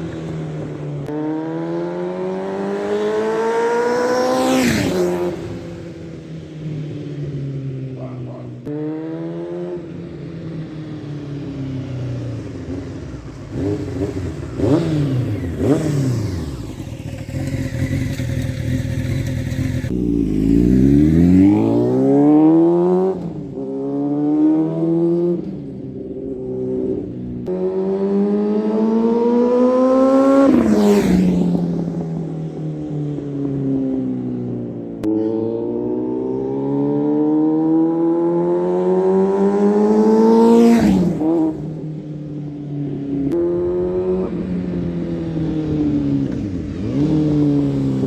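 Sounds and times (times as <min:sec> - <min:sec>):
motorcycle engine revving: 0:00.0 - 0:48.0.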